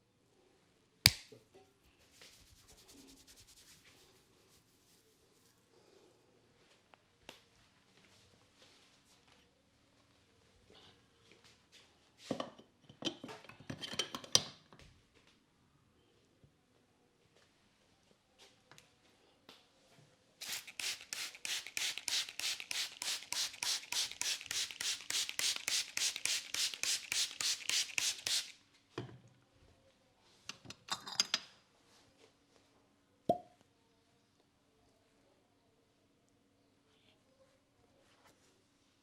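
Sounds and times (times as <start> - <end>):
sharp snap: 1.1 - 1.4.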